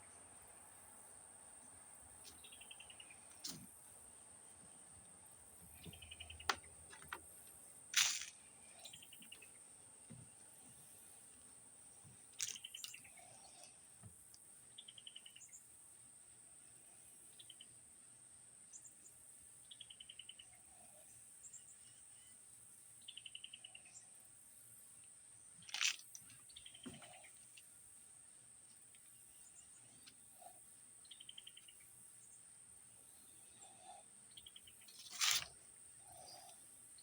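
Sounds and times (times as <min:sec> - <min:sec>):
cricket chirping: 0:12.4 - 0:13.7.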